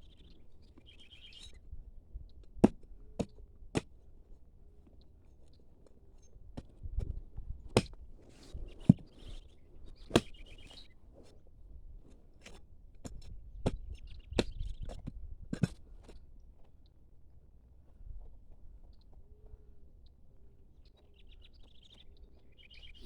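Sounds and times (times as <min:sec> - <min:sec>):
blade chopping tree root: 0:10.1 - 0:10.5.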